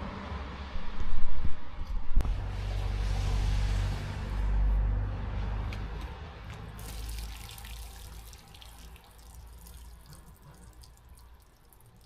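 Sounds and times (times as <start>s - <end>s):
water trickling and dripping: 6.5s - 12.0s
small drips and crackles: 6.8s - 12.0s.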